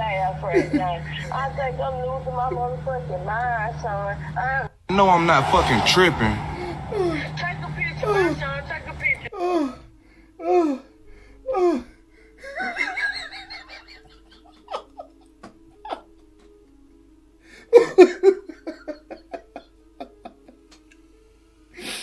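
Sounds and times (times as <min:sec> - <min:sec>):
faint steady hum: 0:00.0 - 0:21.7
man laughing hard: 0:00.5 - 0:01.3, 0:06.2 - 0:07.3, 0:12.4 - 0:16.2, 0:17.7 - 0:20.6.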